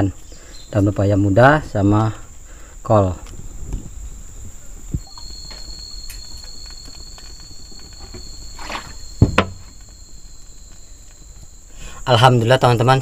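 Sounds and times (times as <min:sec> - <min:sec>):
insects chirring: 0:00.0 - 0:13.0
sharp knocks: 0:08.0 - 0:09.8.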